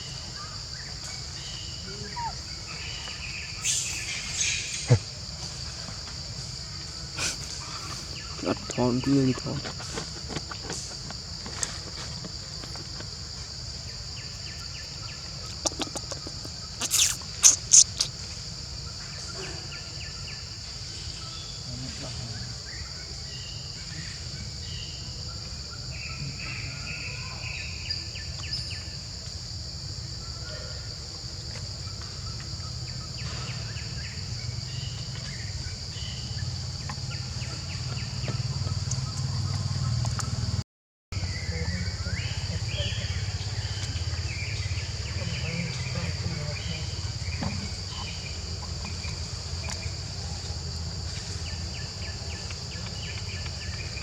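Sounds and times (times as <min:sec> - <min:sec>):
insects droning: 0:00.0 - 0:40.6, 0:41.2 - 0:54.0
faint short chirps: 0:15.6 - 0:18.1.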